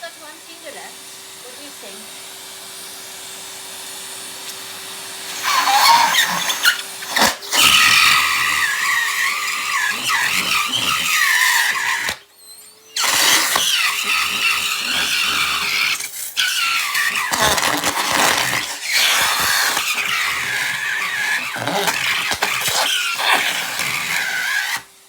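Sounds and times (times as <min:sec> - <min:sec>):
vacuum cleaner motor: 0:00.0 - 0:25.0
rubber glove squealing in airflow: 0:05.4 - 0:24.8.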